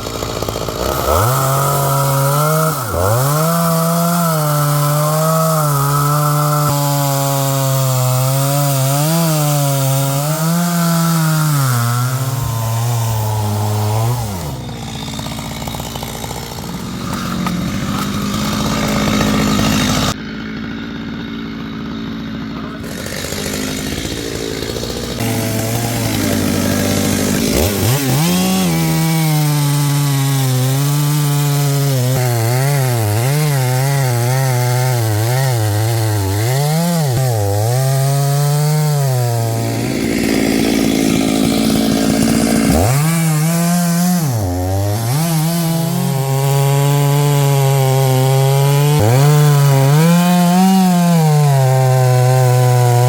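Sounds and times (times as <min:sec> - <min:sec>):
chainsaw cutting wood: 0:00.0 - 0:53.0.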